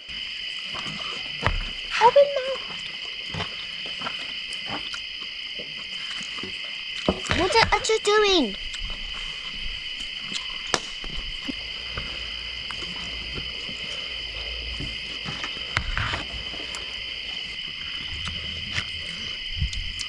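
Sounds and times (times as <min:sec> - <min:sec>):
crickets trilling: 0:00.0 - 0:20.0.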